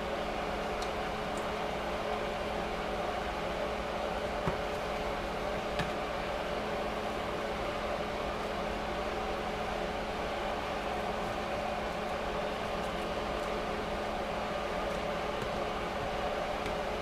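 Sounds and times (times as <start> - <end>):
fan motor whirring: 0.0 - 17.0.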